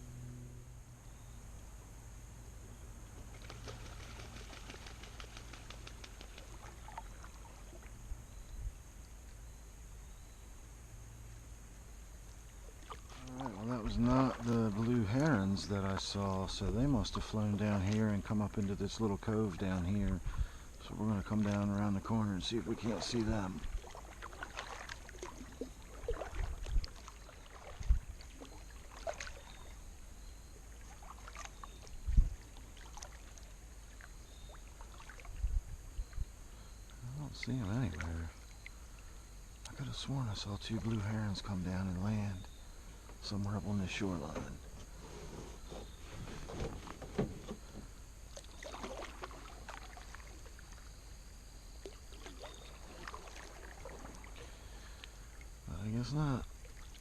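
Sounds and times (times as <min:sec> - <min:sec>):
paddle blades splashing: 0:03.1 - 0:08.0, 0:12.3 - 0:35.5, 0:43.9 - 0:55.7, 0:56.4 - 0:57.0
water dripping from paddle blades: 0:22.8 - 0:29.7, 0:51.8 - 0:55.6.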